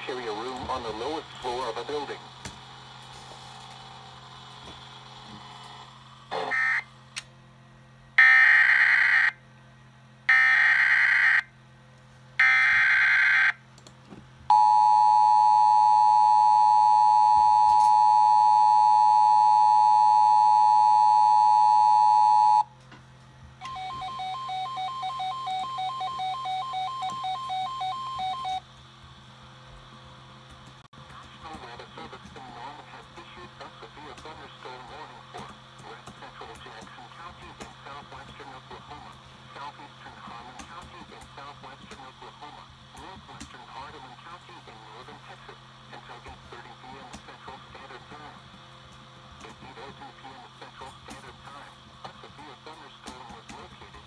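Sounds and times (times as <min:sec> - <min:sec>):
low steady hum: 0:00.0 - 0:54.0
two-tone attention signal: 0:14.5 - 0:22.7, 0:23.6 - 0:28.6
rapidly pulsing beeps: 0:23.7 - 0:28.6.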